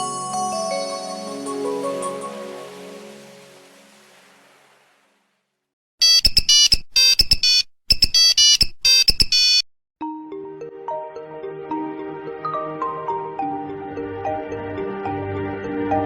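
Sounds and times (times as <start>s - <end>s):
rapid high-pitched electronic beeps: 6.0s - 9.6s.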